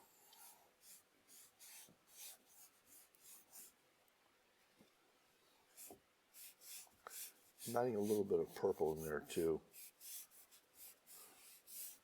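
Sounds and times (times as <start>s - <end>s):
paintbrush swishes: 5.8s - 12.0s.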